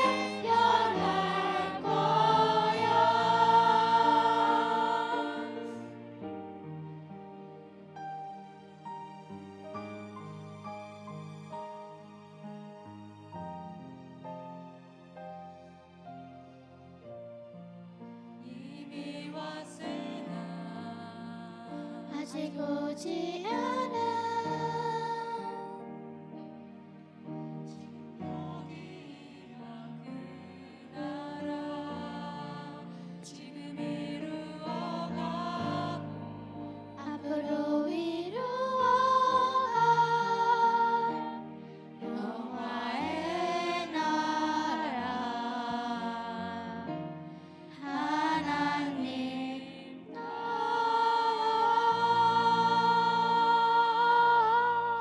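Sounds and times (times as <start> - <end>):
voices singing worship song: 0.0 - 6.0, 18.4 - 25.7, 28.2 - 46.9, 47.7 - 55.0
instrumental accompaniment: 0.0 - 18.4.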